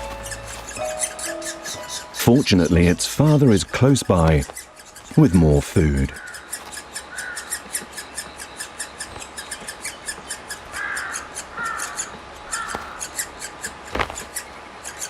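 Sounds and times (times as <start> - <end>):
high-pitched insect chirping: 0.0 - 5.2
woodpeckers squawking: 0.0 - 15.0.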